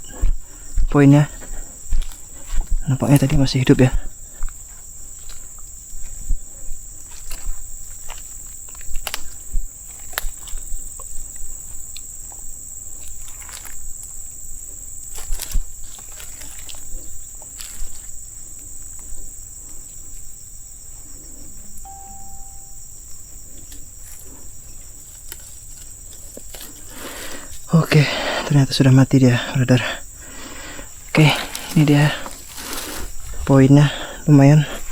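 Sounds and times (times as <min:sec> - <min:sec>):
footsteps through dry leaves: 0:01.8 - 0:03.5, 0:31.3 - 0:33.4
high-pitched insect drone: 0:21.6 - 0:23.4
steady tone: 0:21.9 - 0:22.9.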